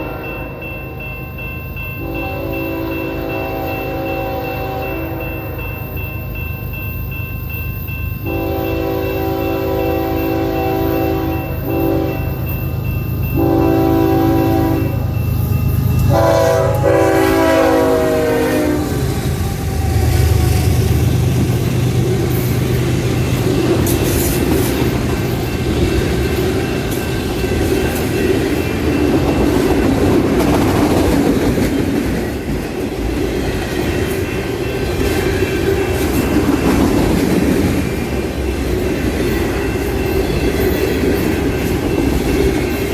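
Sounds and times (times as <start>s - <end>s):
locomotive air horn blasts: 0.0s - 0.7s, 2.0s - 5.6s, 8.3s - 12.3s, 13.4s - 15.0s, 16.1s - 19.0s
diesel locomotives rumbling: 0.0s - 42.9s
freight train wheels clacking: 0.0s - 42.9s.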